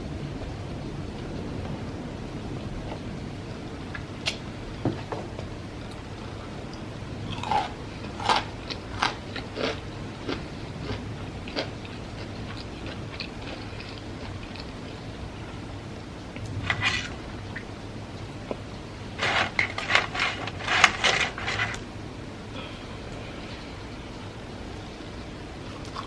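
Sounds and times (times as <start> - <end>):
crunching fried food: 7.3 - 15.0.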